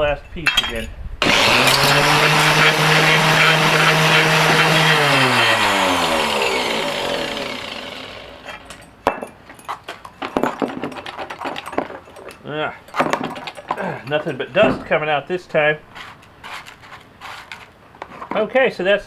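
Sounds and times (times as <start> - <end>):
ore crusher shredding plastic: 1.2 - 8.8
light clicks and rattles: 8.6 - 15.3.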